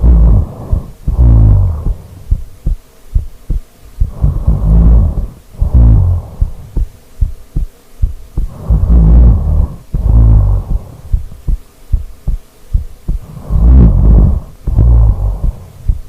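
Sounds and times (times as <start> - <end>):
person snoring: 0.0 - 2.8, 4.0 - 6.9, 8.4 - 11.6, 13.1 - 16.0.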